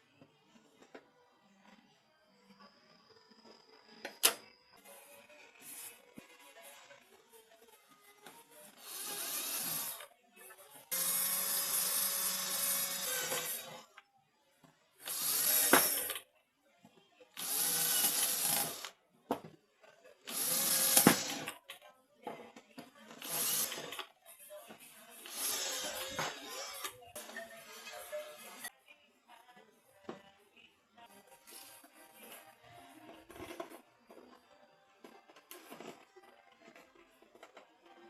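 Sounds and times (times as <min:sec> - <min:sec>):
cordless screwdriver driving screws: 0:25.3 - 0:26.9.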